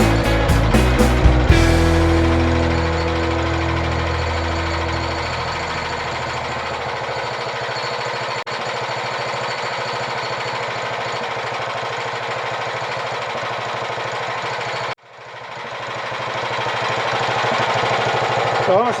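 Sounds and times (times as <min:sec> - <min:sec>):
sawmill engine running: 0:00.0 - 0:19.0.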